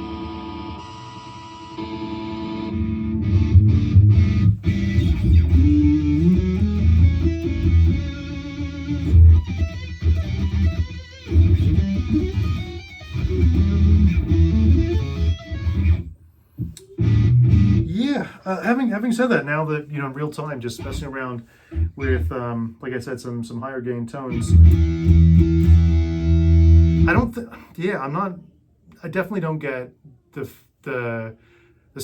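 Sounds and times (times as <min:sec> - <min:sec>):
distorted electric guitar riff: 0:00.0 - 0:18.0, 0:20.8 - 0:22.4, 0:24.3 - 0:27.4.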